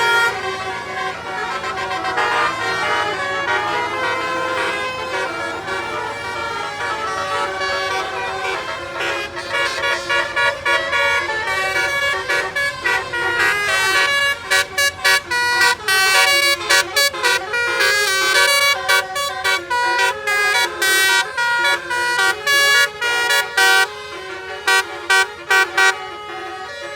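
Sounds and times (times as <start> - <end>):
musical air horn playing tune: 0.0 - 26.9.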